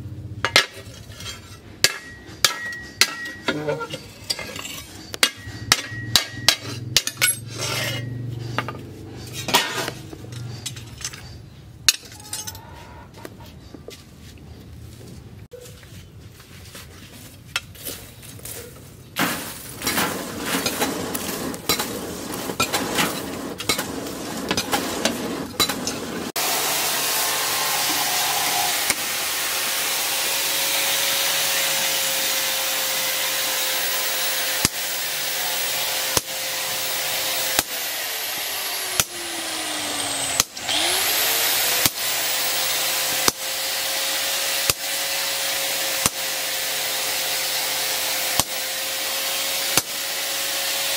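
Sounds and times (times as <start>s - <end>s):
small machine hissing and whining: 26.4s - 48.5s.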